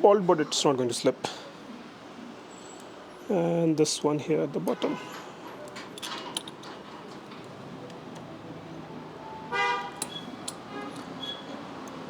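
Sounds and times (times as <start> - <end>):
car horn toot: 9.5 - 10.0.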